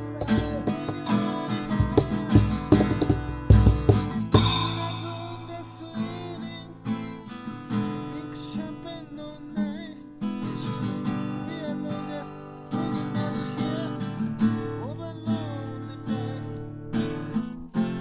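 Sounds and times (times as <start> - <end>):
acoustic guitar strumming: 0.0 - 18.0
sliding melody line: 4.4 - 6.3.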